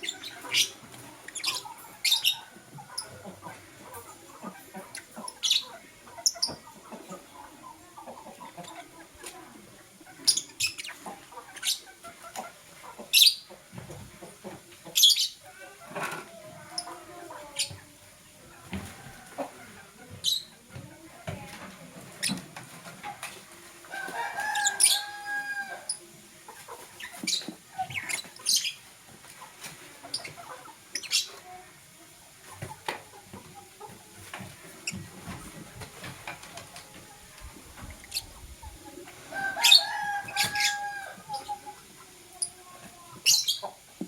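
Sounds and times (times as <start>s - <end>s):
lovebirds chirping: 0.0s - 13.6s, 14.8s - 15.6s, 19.6s - 20.6s, 24.4s - 28.9s, 29.6s - 31.6s, 42.4s - 43.8s.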